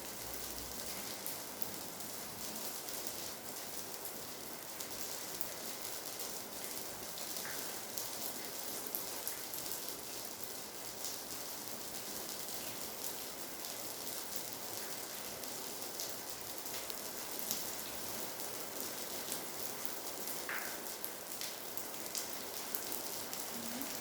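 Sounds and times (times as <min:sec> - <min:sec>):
raindrops ticking on surface: 0:00.0 - 0:24.0
steady rain hiss: 0:00.0 - 0:24.0.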